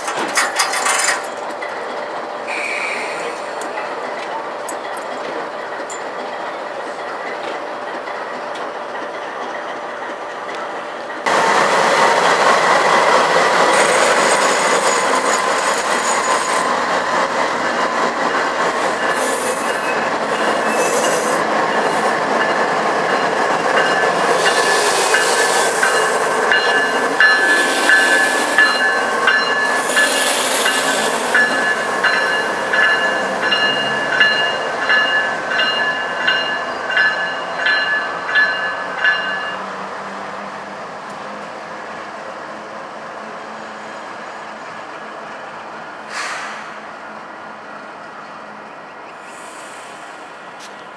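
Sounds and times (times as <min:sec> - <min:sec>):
wheels clacking over rail joints: 0:00.0 - 0:02.3, 0:03.5 - 0:39.7
freight train rumble: 0:00.0 - 0:50.9
high wheel squeal: 0:19.0 - 0:22.1, 0:24.3 - 0:34.2.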